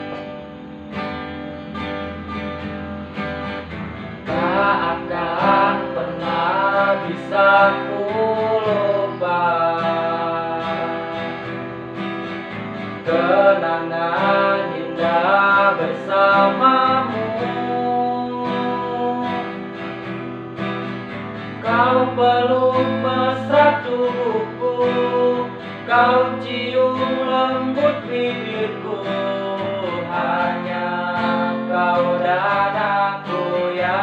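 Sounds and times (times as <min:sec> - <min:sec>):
guitar accompaniment: 0:00.0 - 0:34.0.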